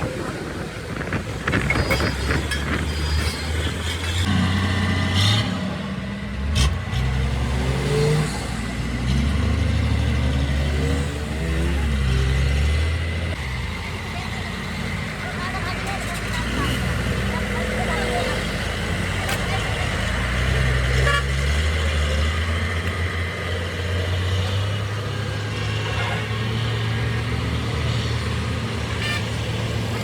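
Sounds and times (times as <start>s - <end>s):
truck engine revving: 0.0s - 30.0s.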